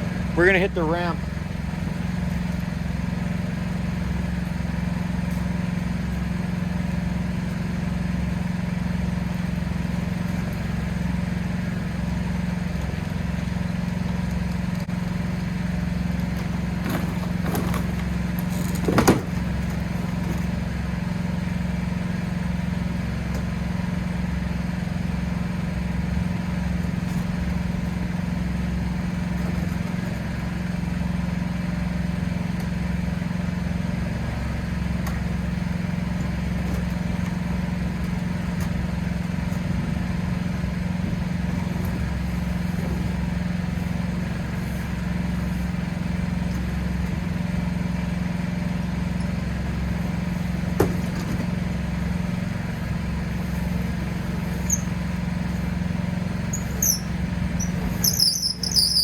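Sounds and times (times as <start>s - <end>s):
motor humming: 23.9s - 59.0s.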